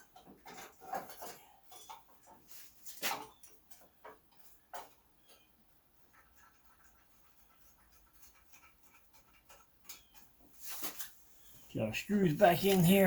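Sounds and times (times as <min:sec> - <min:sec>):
faint handling sounds: 0:10.5 - 0:13.0.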